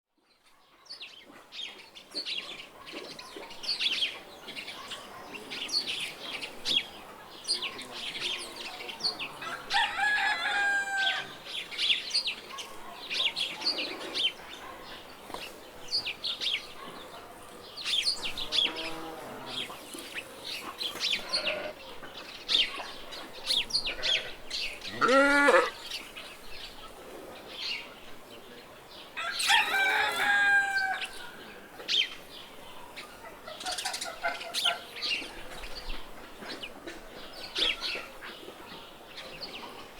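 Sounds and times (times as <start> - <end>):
small birds chirping: 0.2 - 10.0, 11.0 - 25.0
rooster crowing: 9.4 - 11.4, 29.2 - 31.2
hens clucking: 33.2 - 35.6.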